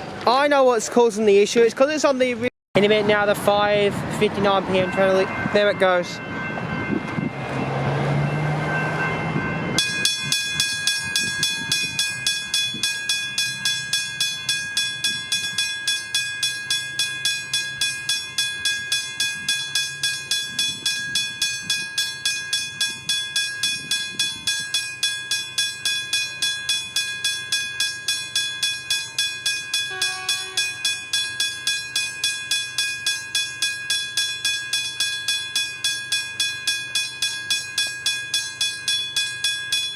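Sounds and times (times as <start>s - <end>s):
departing train rumble: 3.6s - 31.9s
level-crossing bell ringing: 4.4s - 39.9s.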